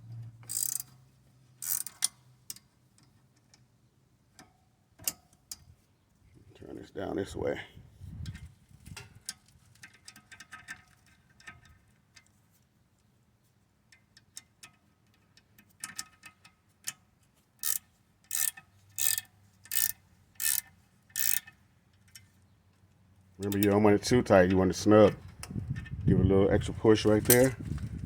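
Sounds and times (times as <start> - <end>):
socket ratchet clicking: 0.4 - 0.9, 17.6 - 22.3.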